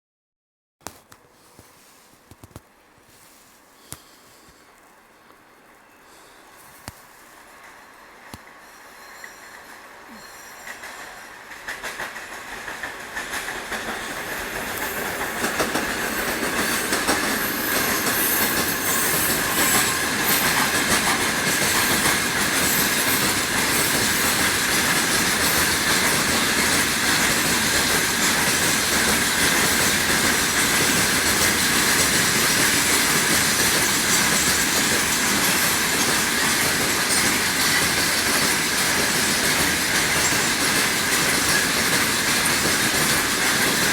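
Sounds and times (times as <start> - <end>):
diesel locomotive: 3.6 - 43.9
train wheels clattering over rails: 5.8 - 43.9
high ringing tone: 8.8 - 11.2.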